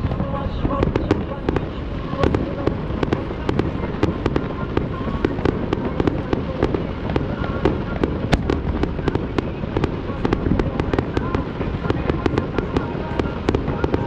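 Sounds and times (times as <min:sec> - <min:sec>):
fireworks sharp bangs: 0:00.0 - 0:14.0
rumble of fireworks bursts: 0:00.0 - 0:14.0.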